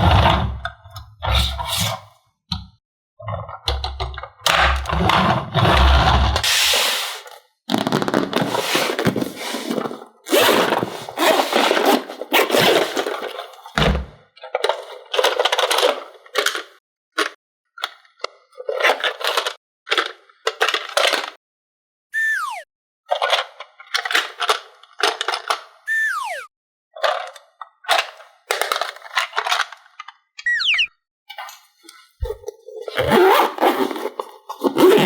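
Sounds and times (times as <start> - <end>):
short falling whistle-like tone: 22.2 - 22.7, 25.9 - 26.5, 30.5 - 30.9.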